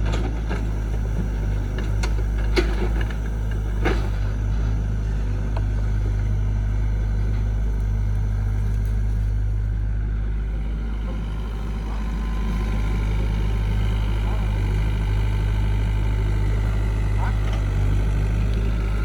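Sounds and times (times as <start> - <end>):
diesel engine low rumble: 0.0 - 19.0.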